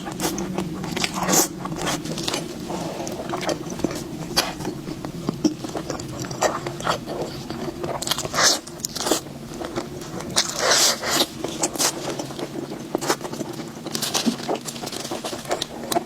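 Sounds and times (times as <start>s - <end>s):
person biting and chewing food: 0.0s - 16.0s.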